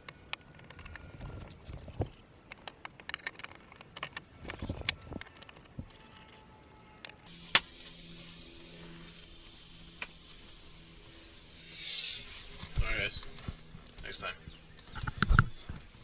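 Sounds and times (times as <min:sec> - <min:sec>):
small hard objects clattering: 0:00.3 - 0:07.3
steady hiss: 0:04.4 - 0:14.4
low held tones: 0:04.4 - 0:16.0.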